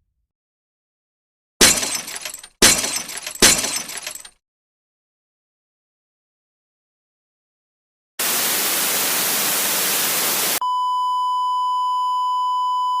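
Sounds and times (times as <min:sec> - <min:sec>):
loud static hiss: 0:08.2 - 0:10.6
steady electronic beep tone: 0:10.6 - 0:13.0.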